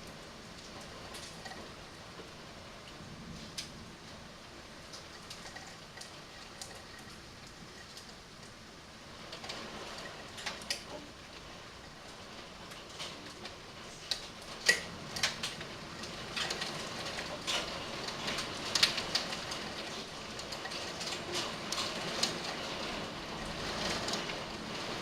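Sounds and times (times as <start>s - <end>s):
heavy rain hissing: 0.0s - 25.0s
hailstones striking hard surfaces: 11.8s - 25.0s.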